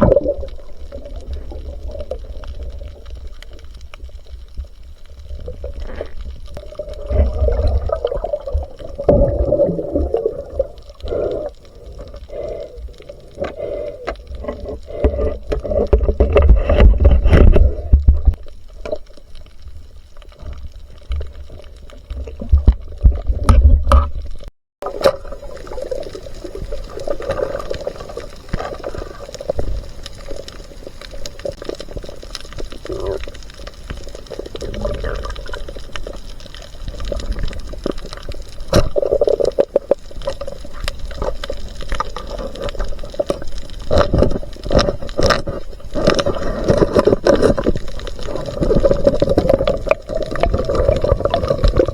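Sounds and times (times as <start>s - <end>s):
water sloshing and gurgling: 0.0s - 51.9s.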